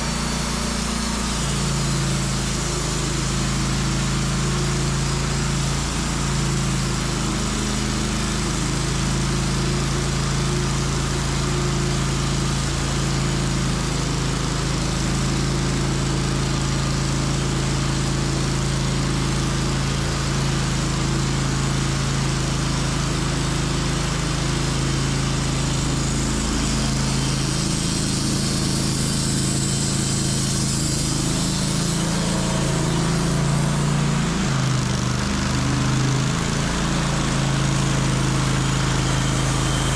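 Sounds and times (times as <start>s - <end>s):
band sawmill sawing log: 0.0s - 39.9s.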